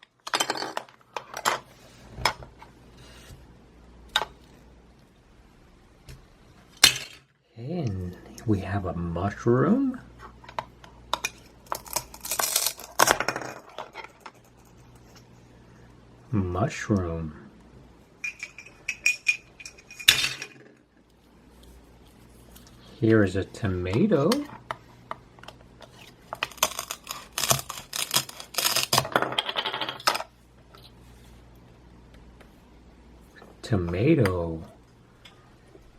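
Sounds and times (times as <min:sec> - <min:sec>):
velcro rip: 0:26.5 - 0:29.0.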